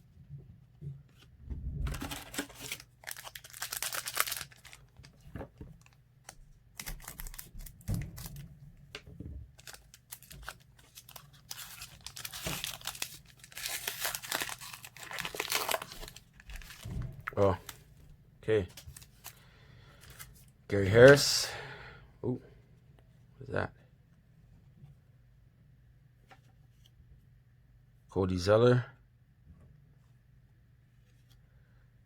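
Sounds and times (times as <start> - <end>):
wrapper tearing and crinkling: 1.9 - 5.2, 6.8 - 8.4, 9.6 - 16.9.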